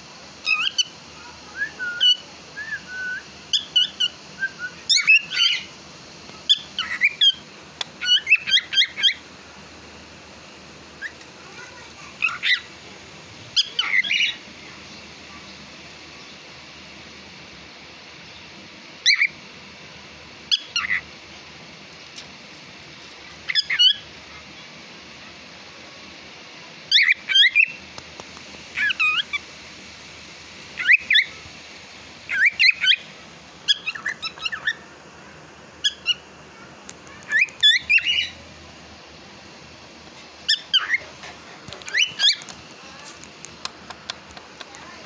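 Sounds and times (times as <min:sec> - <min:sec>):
cockatiel whistled chirps: 0:01.6 - 0:05.7, 0:19.0 - 0:19.4, 0:26.9 - 0:27.8, 0:30.8 - 0:31.3, 0:33.7 - 0:34.8, 0:40.5 - 0:41.0, 0:41.9 - 0:42.4.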